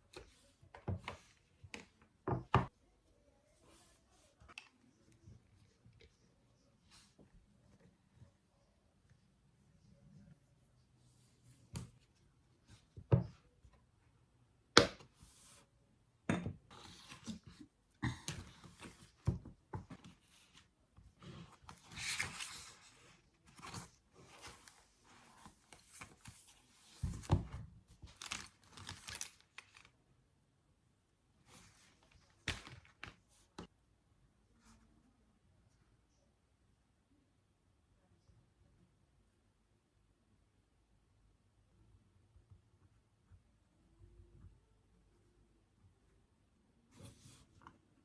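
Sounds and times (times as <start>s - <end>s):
paper rustling and crinkling: 18.3s - 30.0s, 31.5s - 33.6s.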